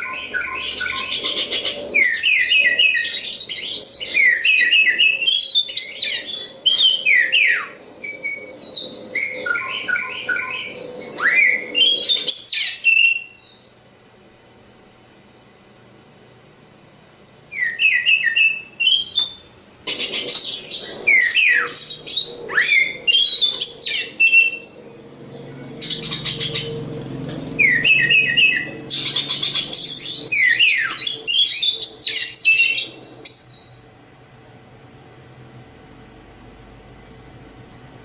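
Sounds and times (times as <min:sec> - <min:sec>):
bird singing whistled song: 0:00.0 - 0:14.0, 0:17.5 - 0:26.8, 0:27.5 - 0:33.8, 0:37.4 - 0:38.0.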